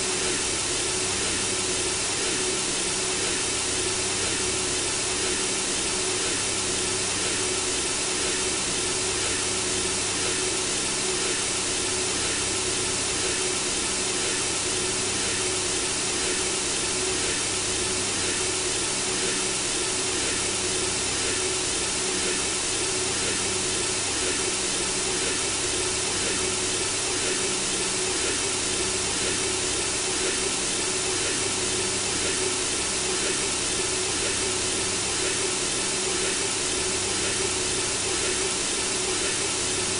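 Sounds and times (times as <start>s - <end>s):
faint constant hum: 0.0s - 39.9s.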